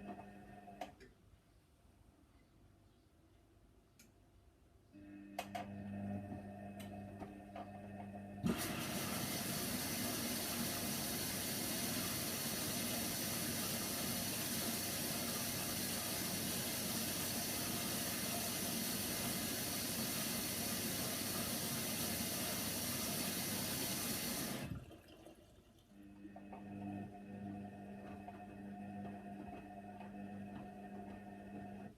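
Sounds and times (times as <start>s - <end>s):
water rushing into washing machine: 8.4s - 31.9s.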